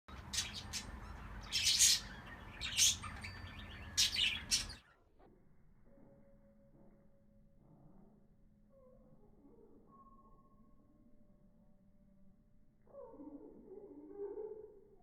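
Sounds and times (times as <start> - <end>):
pet birds chirping: 0.1 - 4.9.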